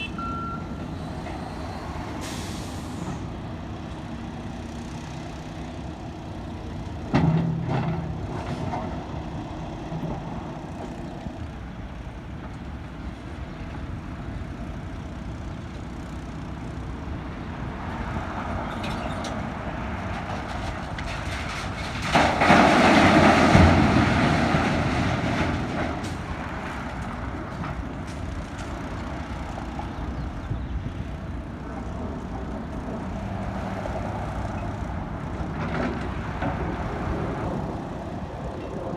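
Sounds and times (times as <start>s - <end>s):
diesel engine running: 0.0s - 38.9s
debris dropping into truck bed: 21.0s - 26.0s.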